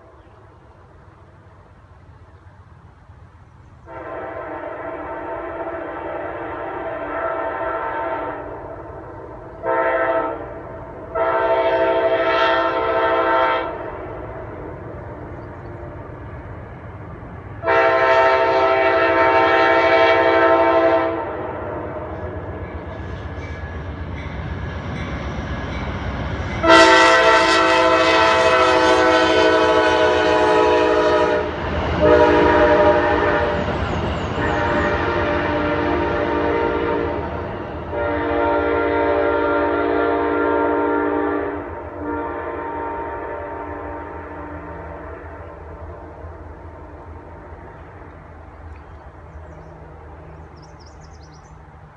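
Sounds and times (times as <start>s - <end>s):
passing train rumble: 0.0s - 51.9s
locomotive air horn blasts: 3.8s - 8.9s, 9.6s - 14.8s, 17.6s - 22.4s, 26.5s - 33.8s, 34.4s - 45.8s.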